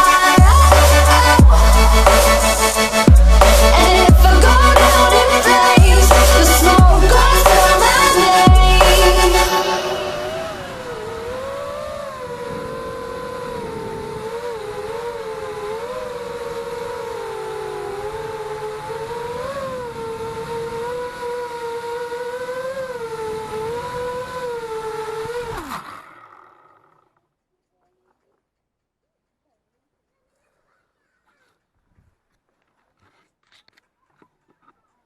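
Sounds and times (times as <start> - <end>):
quadcopter motors whining: 0.0 - 27.2.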